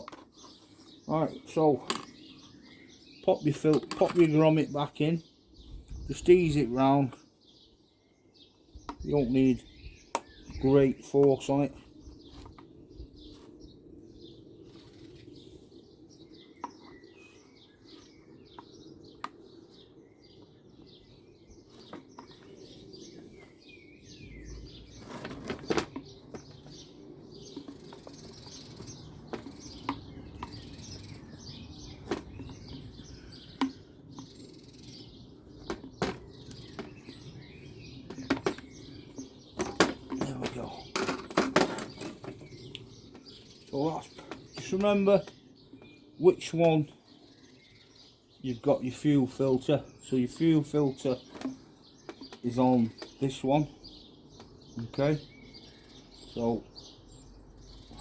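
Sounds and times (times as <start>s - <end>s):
light clicks and knocks of plastic parts: 0.0s - 2.2s, 3.5s - 4.5s, 10.1s - 13.5s, 25.0s - 46.8s, 50.0s - 53.5s, 54.3s - 55.2s
birds chirping: 0.0s - 58.0s.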